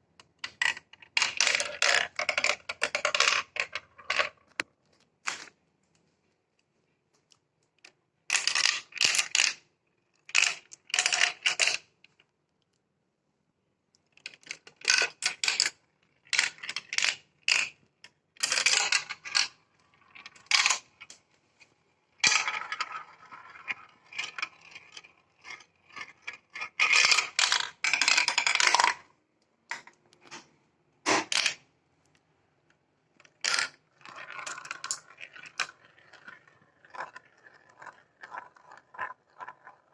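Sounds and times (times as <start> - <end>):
marbles clattering through plastic track: 0.4 - 4.6, 8.3 - 9.6, 10.3 - 11.9, 14.2 - 17.8, 18.4 - 21.2, 22.2 - 29.1, 31.1 - 31.6, 33.2 - 39.9.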